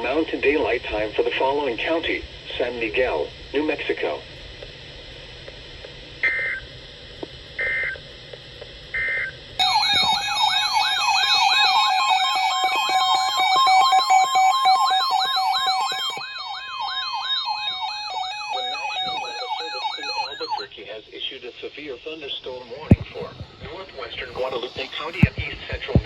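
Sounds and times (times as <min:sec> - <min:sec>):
steady alert tone: 0:09.6 - 0:16.2
sirens wailing: 0:09.6 - 0:20.7
electronic data bursts: 0:09.6 - 0:20.8.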